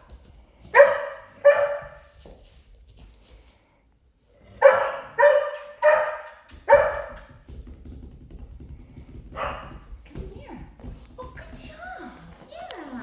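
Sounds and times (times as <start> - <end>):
dog barking: 0.7 - 2.1, 4.6 - 7.3, 9.4 - 9.8.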